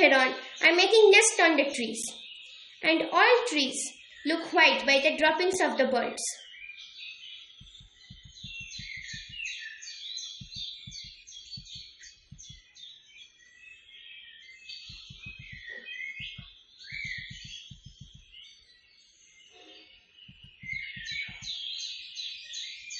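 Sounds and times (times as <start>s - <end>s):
chirping bird calls: 6.3s - 18.9s, 19.5s - 22.9s
low rapid pulsing: 14.9s - 18.3s.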